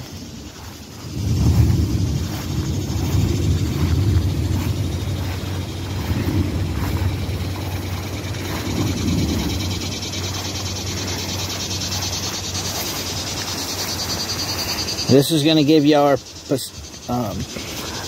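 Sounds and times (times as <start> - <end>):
frogs and insects trilling: 0.0 - 18.0
low rumble: 1.0 - 14.6.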